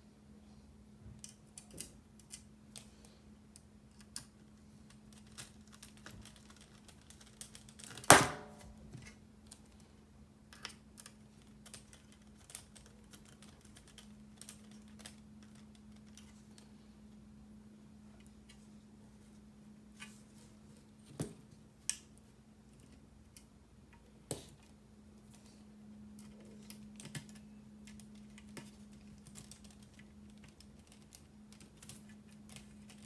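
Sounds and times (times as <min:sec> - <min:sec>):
keyboard parts clicking and tapping: 0:03.6 - 0:08.6, 0:10.5 - 0:16.3, 0:26.2 - 0:33.0.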